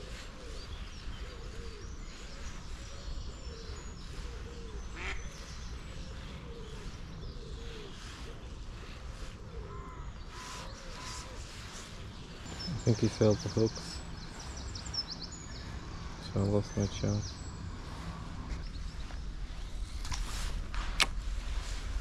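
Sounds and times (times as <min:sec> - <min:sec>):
ducks quacking softly: 0:04.9 - 0:05.3
steady low rumble: 0:05.6 - 0:22.0.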